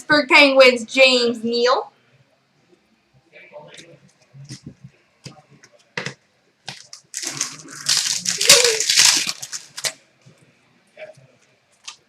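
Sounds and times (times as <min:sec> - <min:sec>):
wrapper crinkling: 0:06.7 - 0:10.0.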